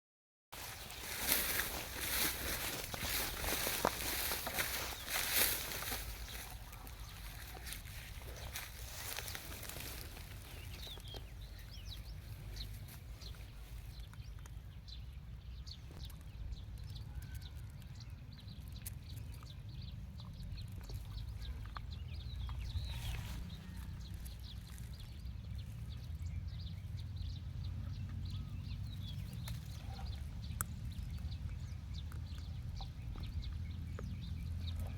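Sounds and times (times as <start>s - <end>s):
steady low rumble: 0.6s - 14.1s.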